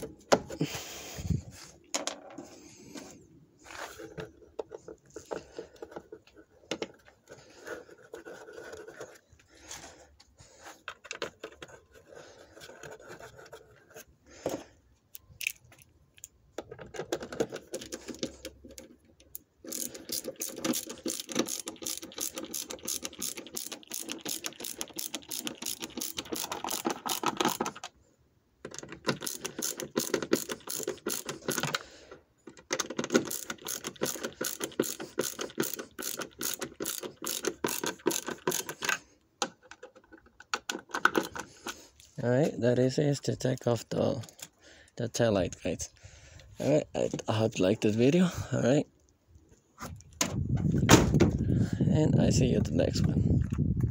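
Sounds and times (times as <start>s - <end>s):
fumbling and handling noises: 0.0s - 28.0s, 28.6s - 42.6s
ratchet wrench clicking: 19.6s - 27.7s, 29.0s - 31.7s, 33.2s - 38.9s.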